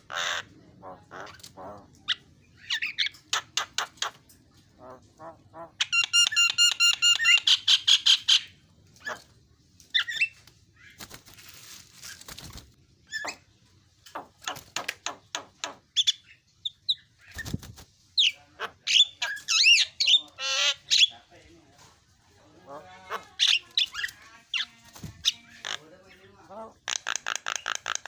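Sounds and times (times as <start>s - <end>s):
myna calling: 0.0s - 4.2s, 22.6s - 28.0s
rustling noise: 10.4s - 12.8s.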